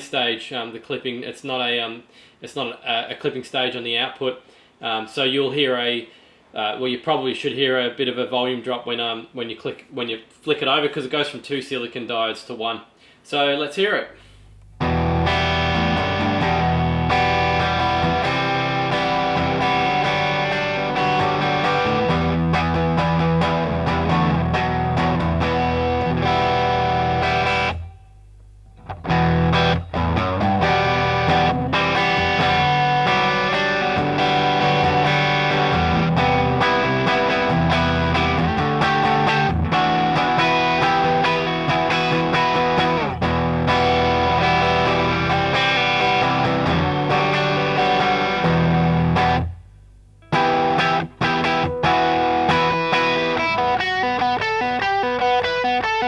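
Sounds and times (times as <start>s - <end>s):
overdriven electric guitar: 14.3s - 56.0s.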